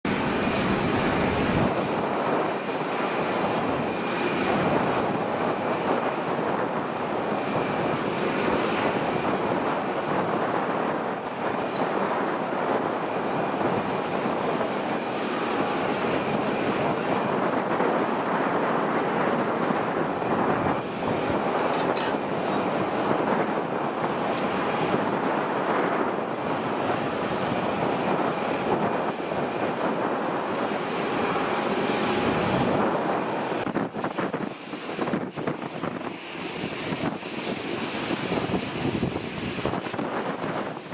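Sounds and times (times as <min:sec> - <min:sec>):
high engine whine: 0:00.0 - 0:40.9
jet engines roaring: 0:00.0 - 0:40.9.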